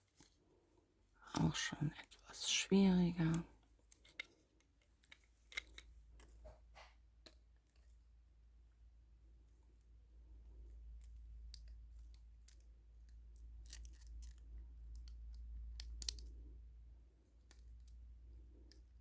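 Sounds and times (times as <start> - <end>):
plastic pieces clicking: 3.2 - 6.4, 11.0 - 16.5.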